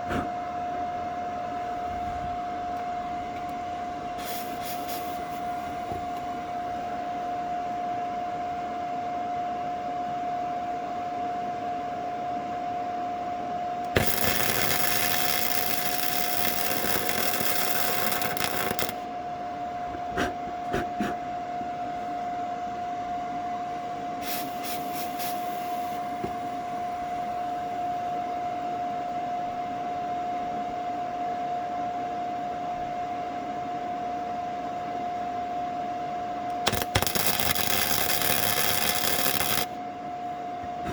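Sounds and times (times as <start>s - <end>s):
steady high hum: 0.0s - 40.9s
welder arcing crackling hiss: 4.2s - 6.2s, 13.9s - 19.0s, 24.2s - 26.4s, 36.6s - 39.8s.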